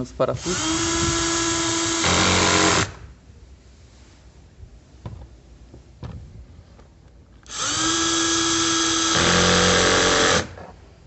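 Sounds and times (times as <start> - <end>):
cordless screwdriver motor whining: 7.4 - 10.5.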